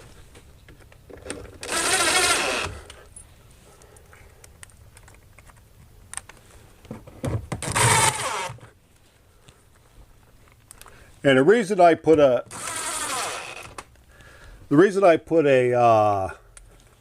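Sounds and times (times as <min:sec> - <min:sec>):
power drill driving screws: 0:01.6 - 0:02.9, 0:07.6 - 0:08.6, 0:12.5 - 0:13.8.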